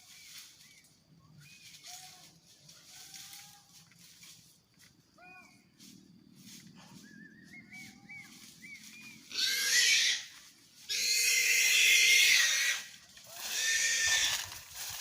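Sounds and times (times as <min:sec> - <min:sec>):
pig squealing harshly: 0:09.3 - 0:10.3, 0:10.9 - 0:14.4
pig yelping calls: 0:09.3 - 0:10.3, 0:10.9 - 0:14.4.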